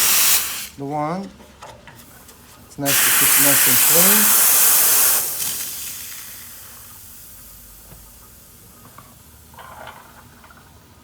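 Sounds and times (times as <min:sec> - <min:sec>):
steam wand hissing: 0:00.0 - 0:00.8, 0:02.8 - 0:09.3.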